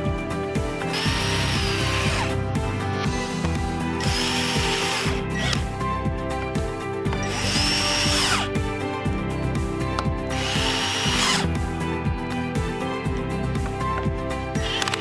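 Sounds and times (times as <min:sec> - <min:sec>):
background music with steady beat: 0:00.0 - 0:15.0
whirring buzzy sound: 0:10.3 - 0:11.5.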